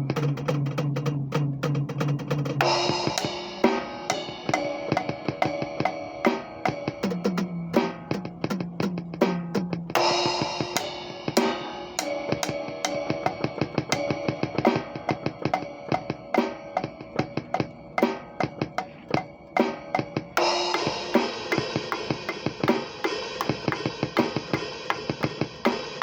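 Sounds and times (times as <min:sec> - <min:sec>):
cymbal crashes: 0:02.6 - 0:08.0, 0:10.0 - 0:26.0
snare tom and bass drum hits: 0:07.8 - 0:19.2.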